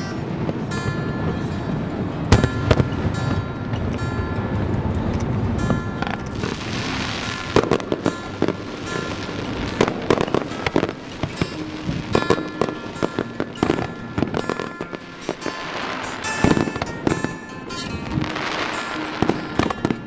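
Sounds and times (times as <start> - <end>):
fireworks bangs and crackles: 0.0 - 20.0
music playing: 0.0 - 20.0.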